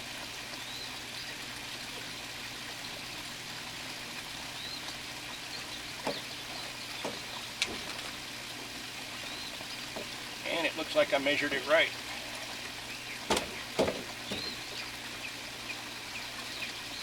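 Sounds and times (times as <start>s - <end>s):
running water trickling: 0.0s - 17.0s
bird chirping: 5.4s - 7.8s, 9.2s - 9.9s, 12.9s - 15.4s
knocks of plastic pipe: 13.3s - 14.6s.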